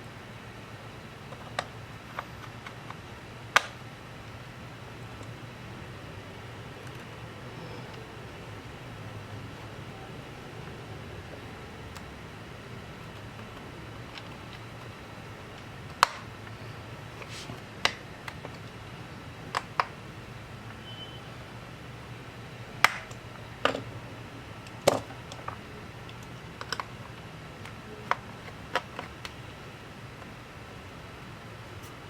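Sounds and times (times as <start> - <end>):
steady low hum: 0.0 - 32.0
sharp clicks and taps: 15.6 - 16.3.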